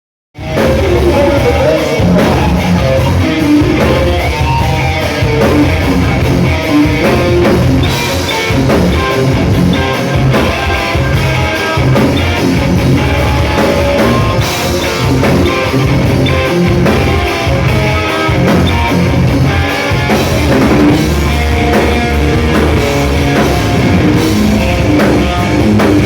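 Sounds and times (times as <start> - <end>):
bass guitar: 0.4 - 26.0
drum kit: 0.4 - 26.0
electric guitar: 0.4 - 26.0.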